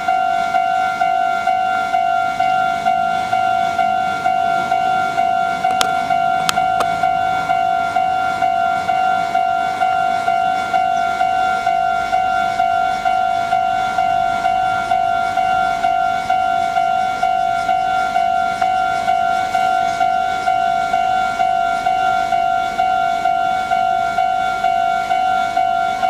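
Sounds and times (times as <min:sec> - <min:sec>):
level crossing warning bell: 0:00.0 - 0:26.0.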